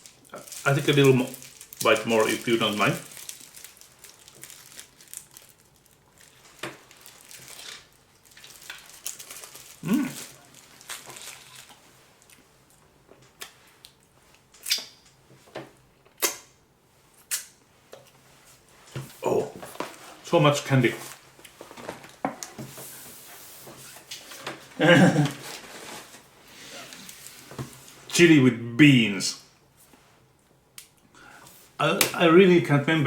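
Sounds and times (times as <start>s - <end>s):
wrappers crinkling: 0.0s - 14.7s, 19.6s - 22.2s, 25.4s - 26.3s.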